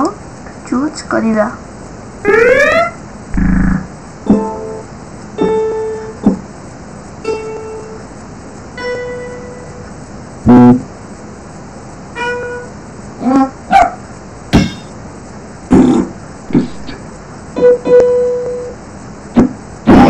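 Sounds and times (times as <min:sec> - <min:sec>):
rising chirps: 0:02.2 - 0:03.9
deep burst: 0:03.3 - 0:03.9.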